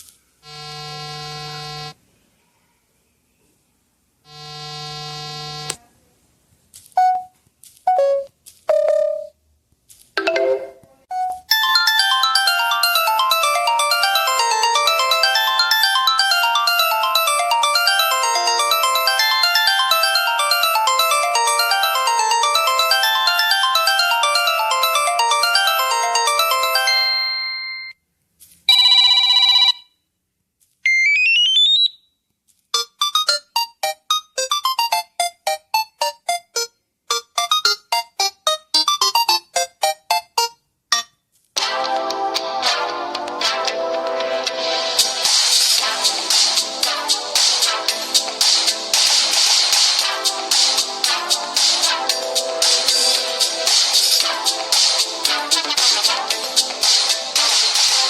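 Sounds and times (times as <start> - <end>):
buzzy phone tone: 0.4 - 2.0, 4.3 - 5.7
notification chimes: 10.2 - 27.9
melodic ringtone: 10.2 - 28.0, 30.9 - 32.0.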